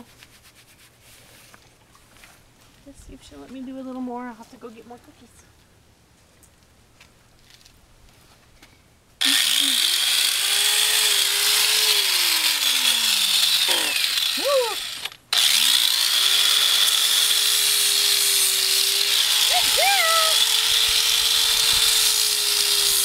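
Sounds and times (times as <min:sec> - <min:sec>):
angle grinder whining: 0:09.2 - 0:23.0.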